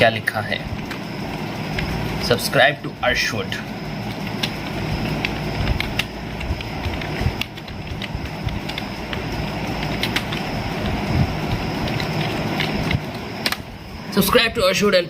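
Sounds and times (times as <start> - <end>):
steady low hum: 0.0 - 15.0
keyboard keys clicking: 4.0 - 13.6.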